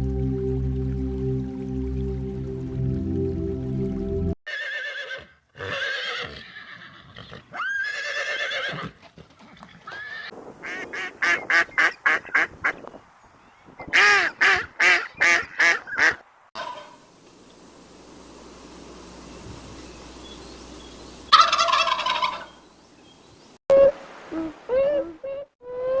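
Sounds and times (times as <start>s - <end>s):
low hum: 0.0s - 4.4s, 17.0s - 21.4s
steady hiss: 16.7s - 21.6s.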